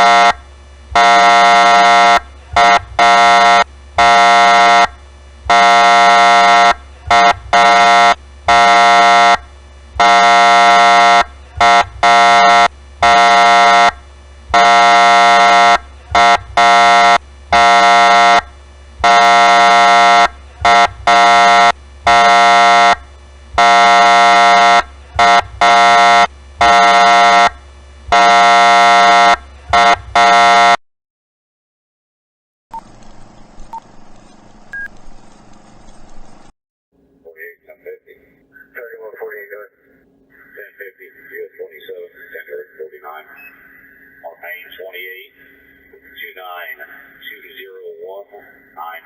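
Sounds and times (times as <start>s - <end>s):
police siren horn blasts: 0.0s - 30.8s.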